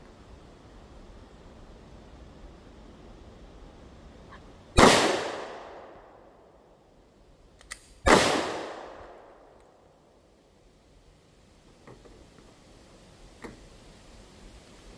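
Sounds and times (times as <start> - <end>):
handgun shots with echo: 4.8 - 6.0, 7.7 - 9.5
faint click: 7.6 - 8.0.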